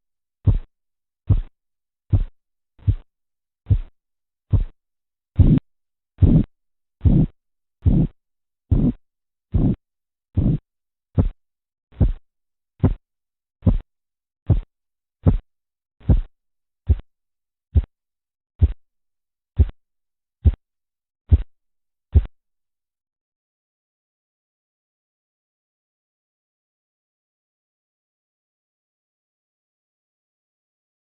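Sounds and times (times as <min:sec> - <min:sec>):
pulse beats through stethoscope: 0:00.5 - 0:00.7, 0:01.3 - 0:01.5, 0:02.1 - 0:03.1, 0:03.7 - 0:03.9, 0:04.5 - 0:04.8, 0:05.4 - 0:05.6, 0:06.2 - 0:09.8, 0:10.4 - 0:10.6, 0:11.2 - 0:12.2, 0:12.8 - 0:13.0, 0:13.6 - 0:13.9, 0:14.5 - 0:16.3, 0:16.9 - 0:17.1, 0:18.6 - 0:18.8, 0:19.6 - 0:19.8, 0:20.4 - 0:20.6, 0:21.3 - 0:21.5, 0:22.1 - 0:22.3.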